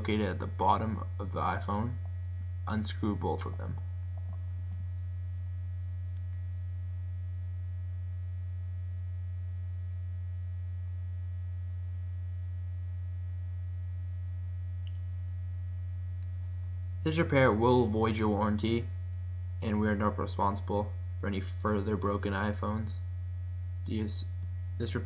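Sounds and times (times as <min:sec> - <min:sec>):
low mains hum: 0:00.0 - 0:25.0
faint ticks: 0:14.8 - 0:15.1.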